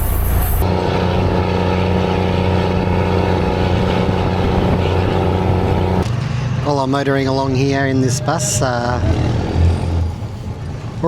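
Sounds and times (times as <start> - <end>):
bus engine hum: 0.0 - 11.0.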